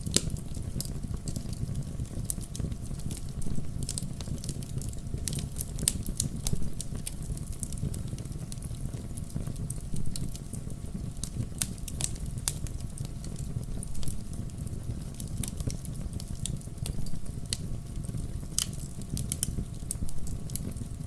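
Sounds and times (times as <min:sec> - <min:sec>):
campfire crackling and popping: 0:00.0 - 0:21.0.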